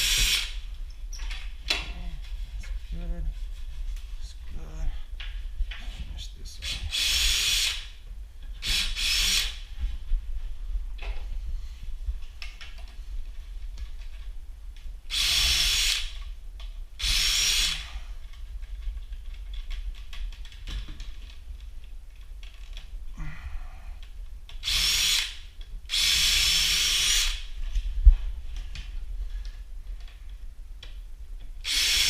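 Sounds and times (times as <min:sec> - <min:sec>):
cordless drill drilling wood: 0:00.0 - 0:00.6, 0:06.6 - 0:07.9, 0:08.6 - 0:09.6, 0:15.1 - 0:16.2, 0:17.0 - 0:17.9, 0:24.6 - 0:27.4, 0:31.6 - 0:32.0.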